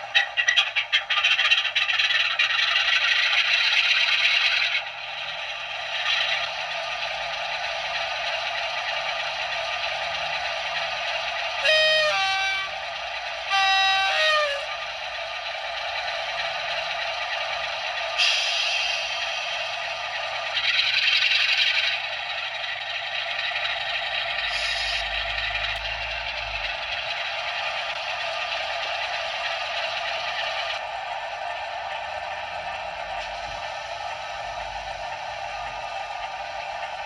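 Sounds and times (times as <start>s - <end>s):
tinny diesel engine sound: 0.0s - 37.0s
two-tone horn blasts: 11.6s - 12.8s, 13.5s - 14.7s.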